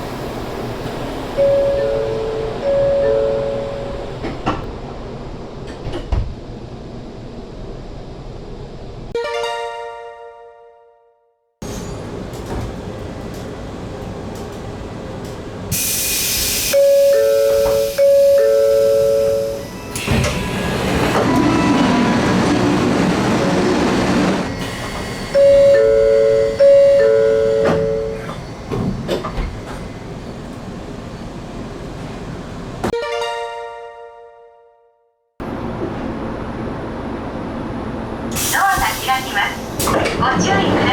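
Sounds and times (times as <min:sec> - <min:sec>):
train doors moving: 0:00.0 - 0:05.0, 0:05.6 - 0:06.5, 0:11.6 - 0:33.0, 0:35.4 - 0:40.9
hiss of air: 0:15.7 - 0:16.8
two-note door chime: 0:25.4 - 0:28.2.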